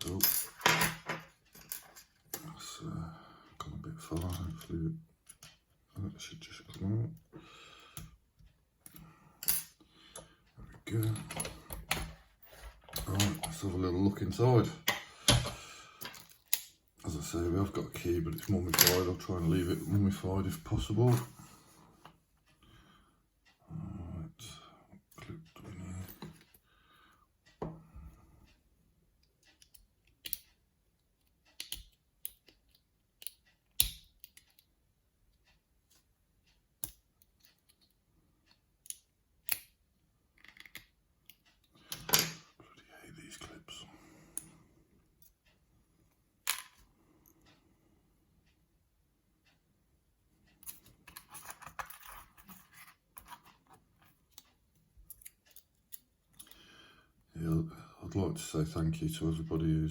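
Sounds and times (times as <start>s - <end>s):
metal lock parts clicking and scraping: 0.0s - 2.5s, 10.9s - 13.8s, 40.4s - 42.5s, 50.6s - 54.4s
small metal tools clicking: 55.0s - 56.6s.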